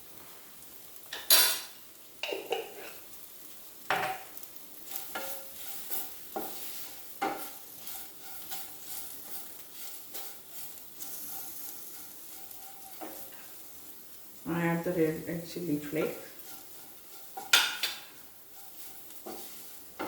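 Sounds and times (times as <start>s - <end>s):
food sizzling in a pan: 0.0s - 20.0s
spatula scraping and knocking pan: 3.9s - 13.9s, 15.5s - 20.0s.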